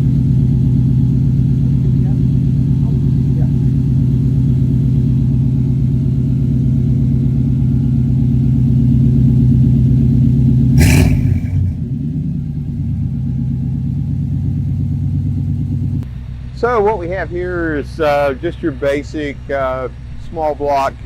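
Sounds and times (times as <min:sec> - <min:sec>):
brief sharp noise: 0:10.8 - 0:11.9.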